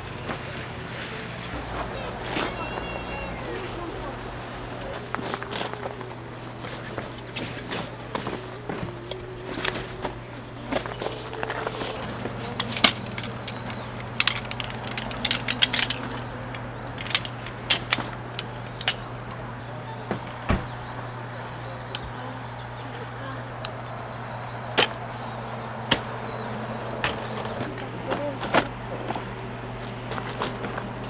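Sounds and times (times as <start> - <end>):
insects chirring: 0.0 - 31.0
light clicks and knocks: 11.9 - 19.1.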